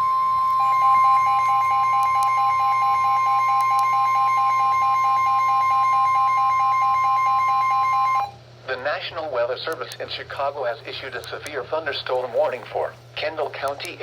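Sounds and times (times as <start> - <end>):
lower tone beeping rapidly: 0.0 - 8.3
loud steady high alarm tone: 0.0 - 8.4.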